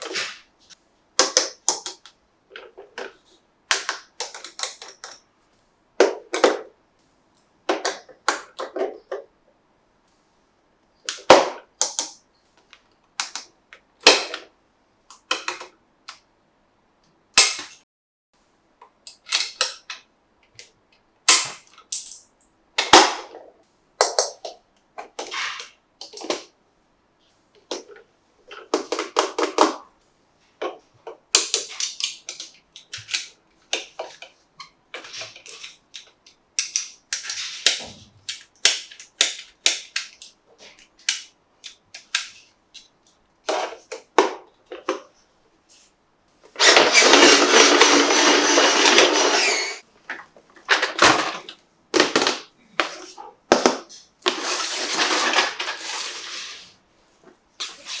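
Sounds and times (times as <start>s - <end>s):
plastic toy parts snapping together: 21.3s - 23.3s, 35.4s - 40.3s
plastic parts rattling: 46.6s - 56.8s.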